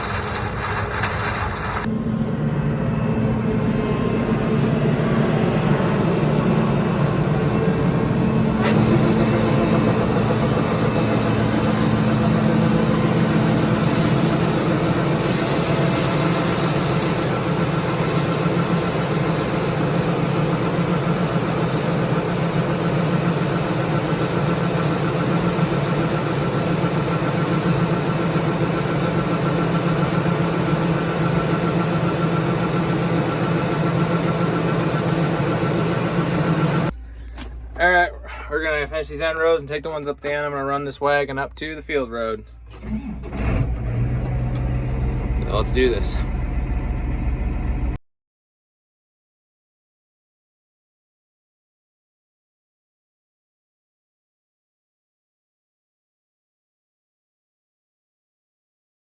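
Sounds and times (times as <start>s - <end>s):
combine harvester engine hum: 0.0s - 48.0s.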